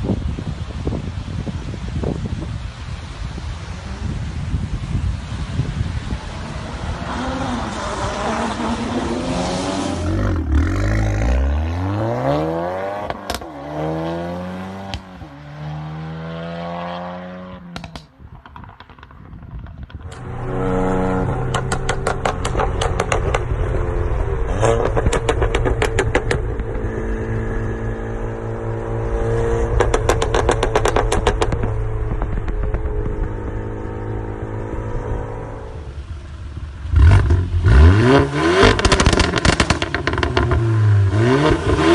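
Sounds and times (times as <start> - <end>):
car engine revving: 6.2 - 41.9
exhaust crackles and pops: 13.0 - 13.5, 17.6 - 28.5, 29.6 - 41.9.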